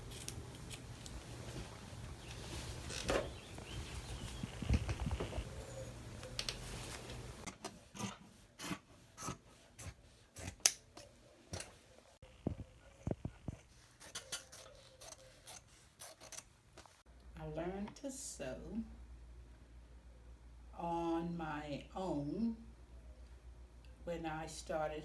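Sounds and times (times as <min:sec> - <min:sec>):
handling noise: 0:00.0 - 0:07.8
scissors cutting cloth: 0:13.9 - 0:16.5.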